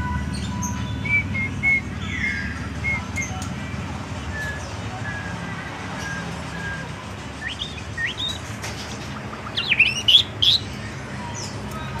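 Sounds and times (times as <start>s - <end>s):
bird whistling notes: 0.4s - 3.4s, 4.3s - 5.4s, 6.0s - 8.4s, 9.5s - 10.6s.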